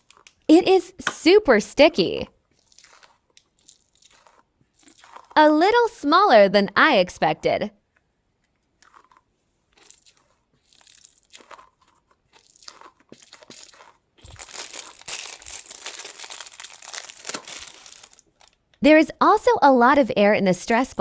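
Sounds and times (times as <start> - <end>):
sticky stress ball crackling: 0.0 - 6.0, 8.7 - 18.8.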